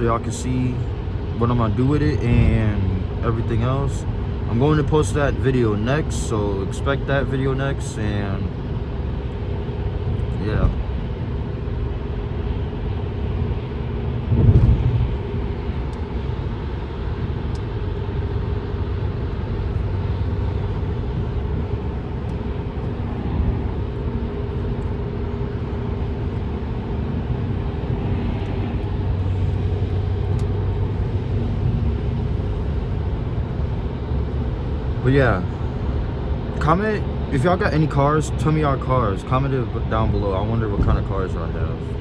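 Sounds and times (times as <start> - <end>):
car engine drone: 0.0 - 42.0
tyre and road noise: 0.0 - 42.0
loud thump: 14.3 - 15.1.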